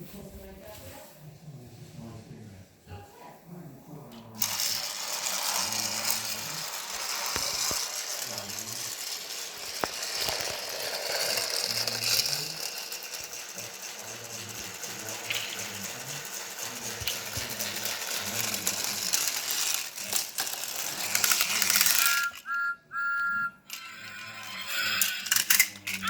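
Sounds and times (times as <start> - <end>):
toy wheels and gears clicking: 4.4 - 26.0
short high tones: 22.1 - 25.0.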